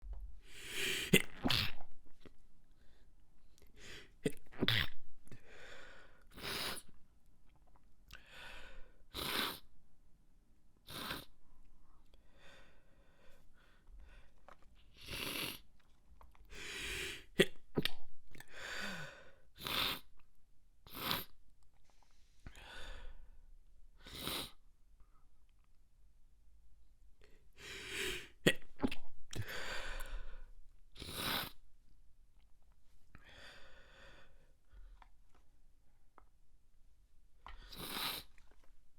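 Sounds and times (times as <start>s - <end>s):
stifled sneezes: 0.8s - 1.9s.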